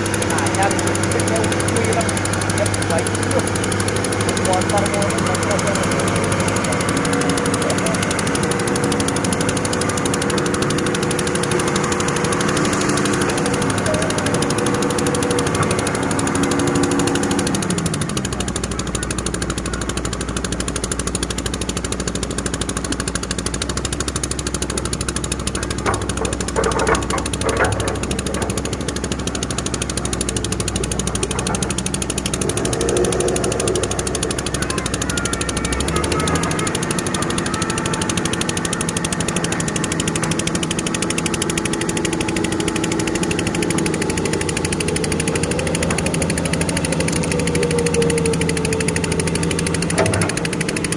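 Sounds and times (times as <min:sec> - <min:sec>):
excavator diesel engine running: 0:00.0 - 0:50.9.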